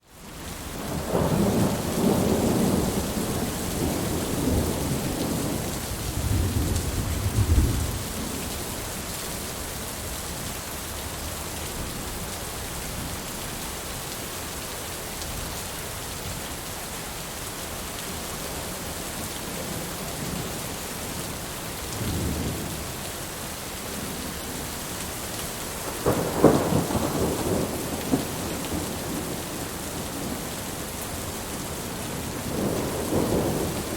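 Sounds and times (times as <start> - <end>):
heavy rain: 0.0 - 33.9
thunder rumbling: 0.9 - 8.4, 25.8 - 30.6, 31.2 - 33.9.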